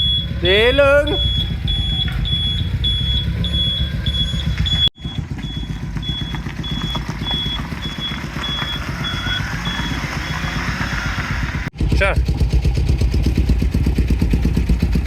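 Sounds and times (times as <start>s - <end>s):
high electronic beeping: 0.0s - 11.6s
engine running: 0.0s - 15.0s.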